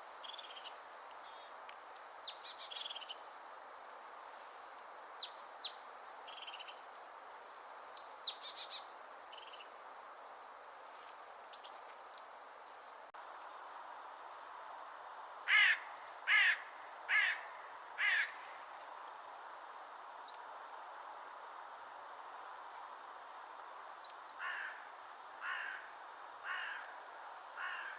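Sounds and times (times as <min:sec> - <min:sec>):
small birds chirping: 0:00.0 - 0:13.1, 0:20.0 - 0:20.5
steady background hiss: 0:00.0 - 0:27.9.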